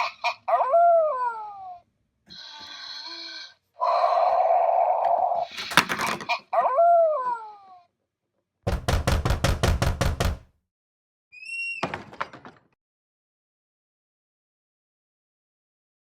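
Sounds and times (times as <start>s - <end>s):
rapid knocks: 8.7s - 10.5s.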